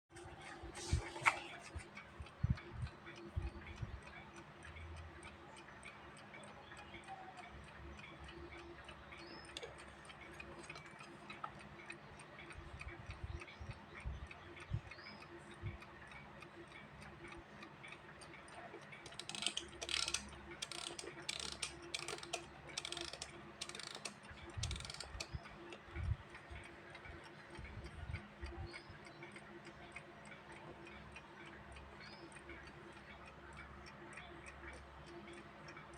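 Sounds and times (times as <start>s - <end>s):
scratchy noises: 0.2s - 1.9s
alarm clock ticking: 1.5s - 35.9s.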